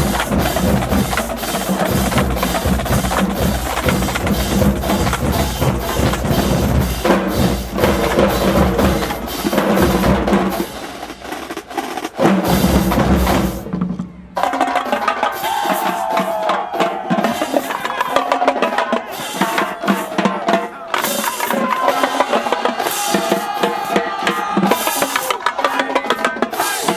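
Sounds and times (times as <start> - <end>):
pitched bass drums: 0.0 - 13.6
snare and tenor drums: 0.0 - 26.9.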